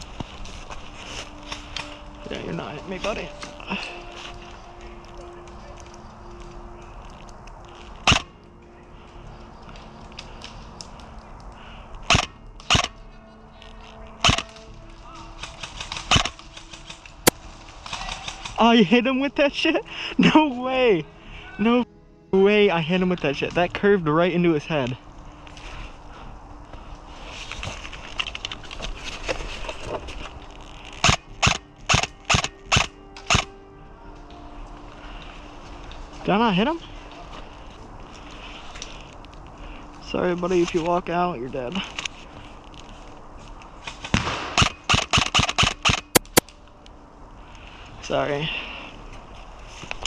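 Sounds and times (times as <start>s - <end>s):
faint small clicks and crackles: 2.9s - 18.6s, 24.8s - 33.5s, 36.8s - 41.0s, 41.8s - 47.8s
airsoft gun shots: 44.1s - 46.4s.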